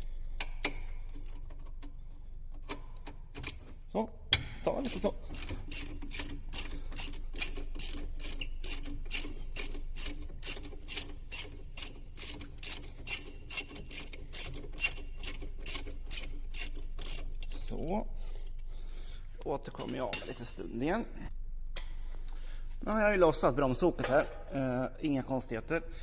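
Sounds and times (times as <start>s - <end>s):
ratchet wrench clicking: 4.7s - 17.8s.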